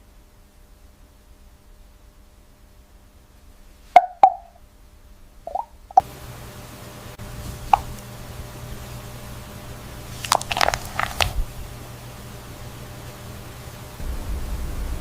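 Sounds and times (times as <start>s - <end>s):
low machine hum with hiss: 0.0s - 15.0s
hollow plops: 5.5s - 6.0s.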